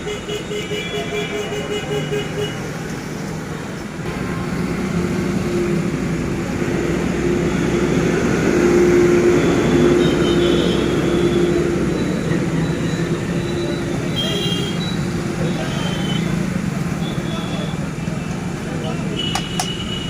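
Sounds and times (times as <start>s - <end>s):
single-cylinder engine thumping: 19.2s - 19.9s.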